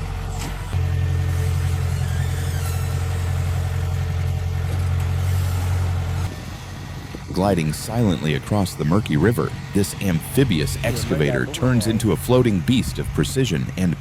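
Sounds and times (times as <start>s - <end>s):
excavator engine humming: 0.0s - 14.0s.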